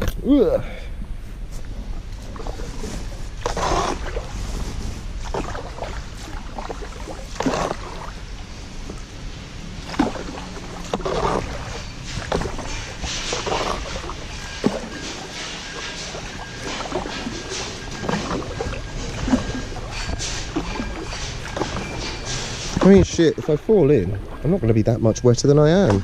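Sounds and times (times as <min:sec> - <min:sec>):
steady low rumble: 0:00.0 - 0:26.0
paddle splashing in water: 0:02.2 - 0:24.8.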